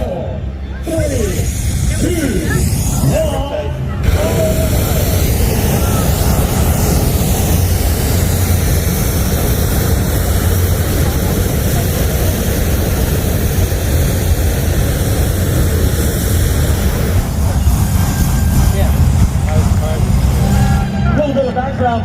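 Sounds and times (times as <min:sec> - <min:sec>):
aircraft engine drone: 0:00.0 - 0:22.0.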